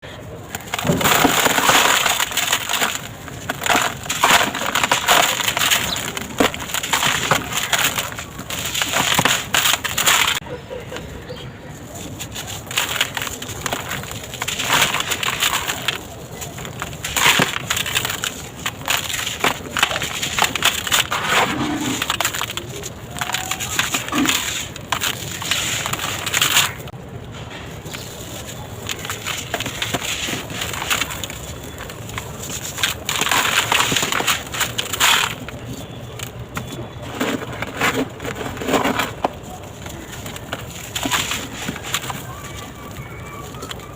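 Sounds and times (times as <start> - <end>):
concrete blocks crunching: 0.1 - 10.4, 11.7 - 43.9.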